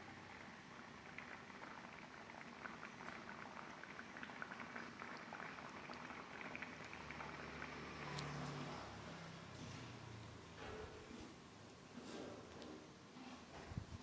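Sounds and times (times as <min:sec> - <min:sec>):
small pops and crackles: 0:01.0 - 0:08.3.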